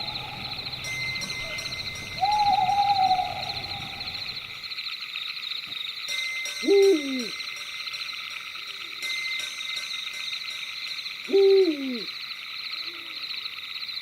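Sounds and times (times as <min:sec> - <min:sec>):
owl hooting: 0:00.0 - 0:04.6, 0:06.6 - 0:07.4, 0:11.3 - 0:12.1
night insects chirring: 0:00.0 - 0:14.0.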